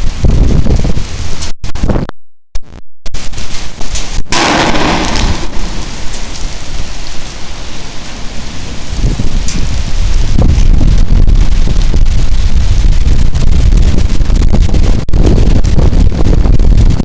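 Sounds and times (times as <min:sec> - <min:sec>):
wind buffeting microphone: 0:00.0 - 0:02.1, 0:03.2 - 0:17.0
heavy rain: 0:03.2 - 0:17.0.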